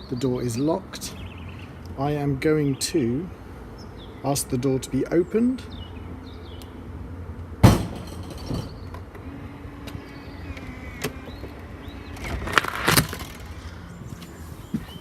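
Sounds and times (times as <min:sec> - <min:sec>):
electric lock motor humming: 0:08.7 - 0:14.0.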